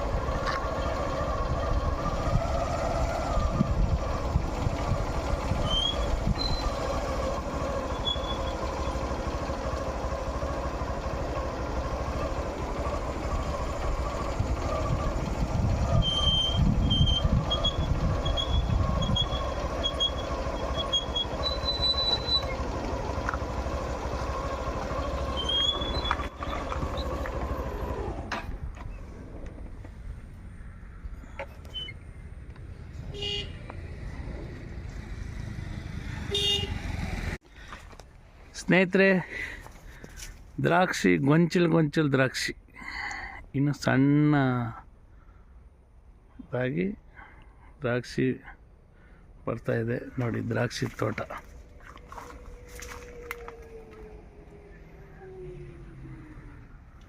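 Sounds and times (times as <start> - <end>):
motor hum: 0.0 - 30.6, 51.2 - 56.4.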